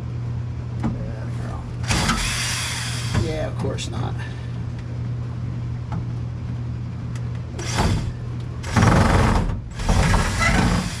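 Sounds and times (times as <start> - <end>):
steady low hum: 0.0 - 11.0
power drill driver whirring: 1.8 - 3.2, 7.6 - 11.0.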